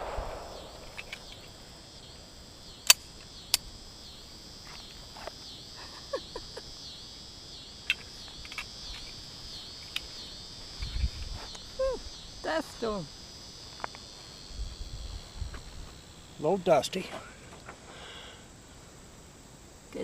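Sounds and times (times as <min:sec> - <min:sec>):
sharp cracks: 0:00.0 - 0:01.8
insects chirping: 0:00.0 - 0:20.0.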